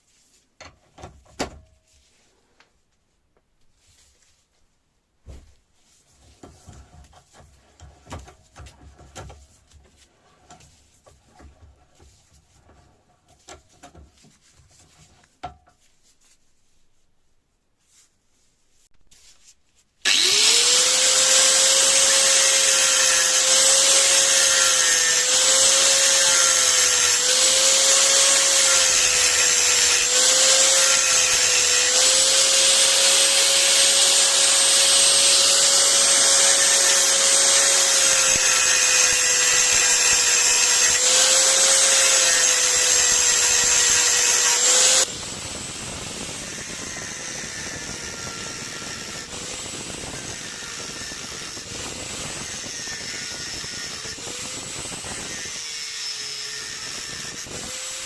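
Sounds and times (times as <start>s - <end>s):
electric power tool whining: 20.0s - 58.0s.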